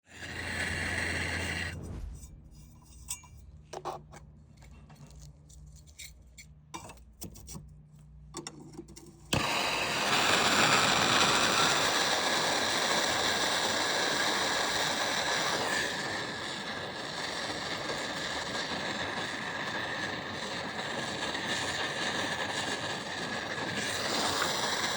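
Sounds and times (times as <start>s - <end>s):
torch flame hissing: 0.1s - 2.9s, 9.4s - 24.9s.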